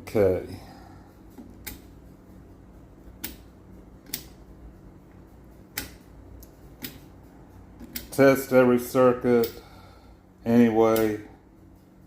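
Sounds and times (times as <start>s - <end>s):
faint steady hum: 0.0s - 12.0s
rotary switch clicking: 1.4s - 1.9s, 3.2s - 4.4s, 5.7s - 7.0s.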